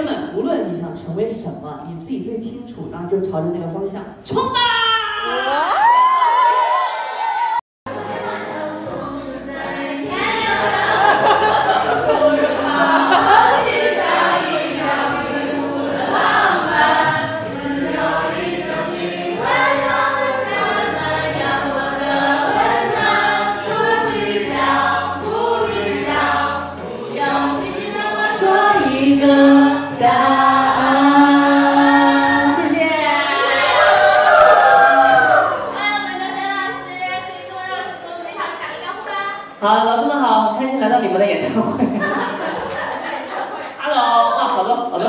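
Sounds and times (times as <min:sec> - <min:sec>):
voices singing in chorus: 0:07.9 - 0:38.0.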